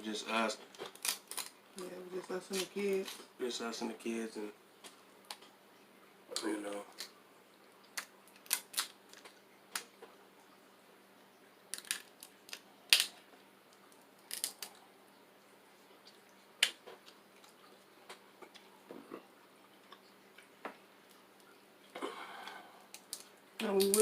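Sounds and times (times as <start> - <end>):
crab shells cracking: 0.7 - 1.6, 7.9 - 9.9, 11.7 - 14.8, 16.6 - 18.6, 22.4 - 24.0.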